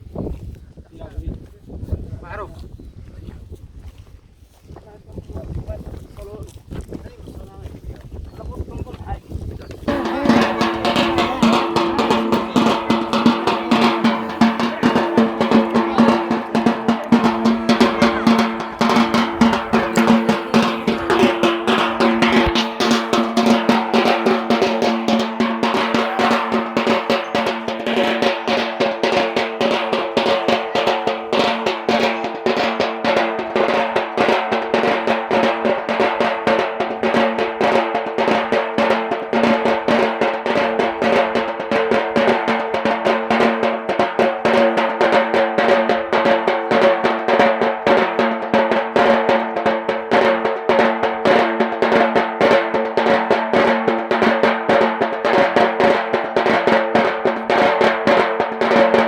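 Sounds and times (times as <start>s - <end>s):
fast drumming: 7.6s - 59.0s
steady held tones: 9.9s - 32.7s.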